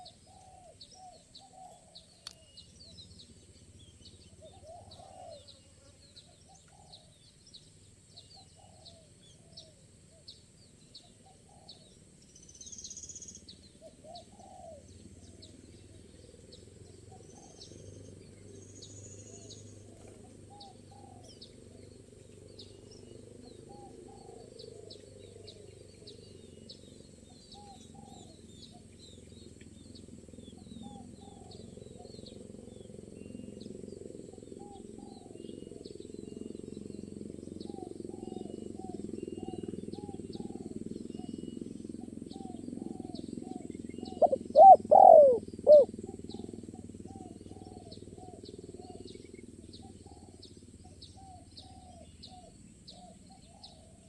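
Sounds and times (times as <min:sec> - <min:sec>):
dove cooing: 0:00.0 - 0:02.1, 0:04.4 - 0:05.5, 0:13.8 - 0:16.0, 0:27.5 - 0:28.4, 0:37.5 - 0:49.1.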